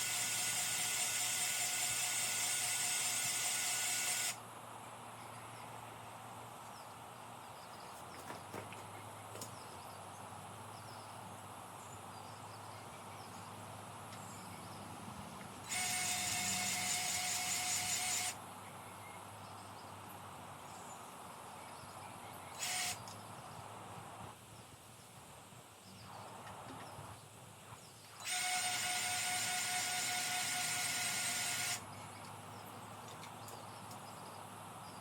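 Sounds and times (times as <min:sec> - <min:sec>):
grease gun motor whining: 0:00.0 - 0:04.4, 0:15.6 - 0:18.4, 0:22.6 - 0:23.1, 0:28.2 - 0:31.9.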